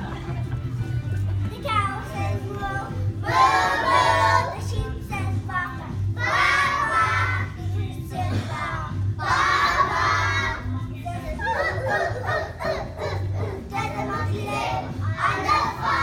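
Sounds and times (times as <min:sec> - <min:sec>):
children singing together: 0:02.0 - 0:16.0.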